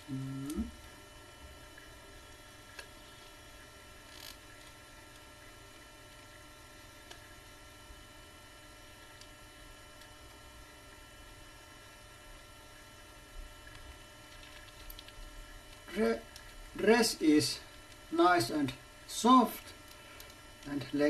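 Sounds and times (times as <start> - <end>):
faint electrical hum: 0.0 - 21.0
faint small clicks: 13.6 - 16.6, 19.6 - 20.7.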